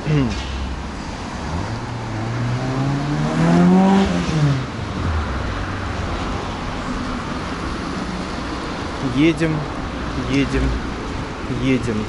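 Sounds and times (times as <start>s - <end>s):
vehicle engine accelerating past: 1.3s - 6.0s.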